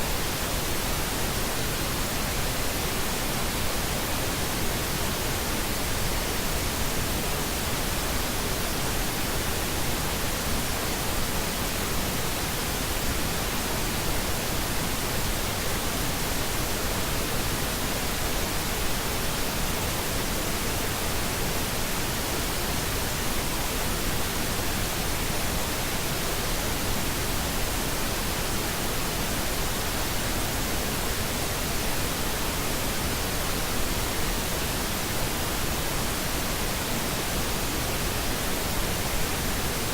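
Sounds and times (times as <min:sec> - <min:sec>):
steady pink noise hiss: 0:00.0 - 0:39.9.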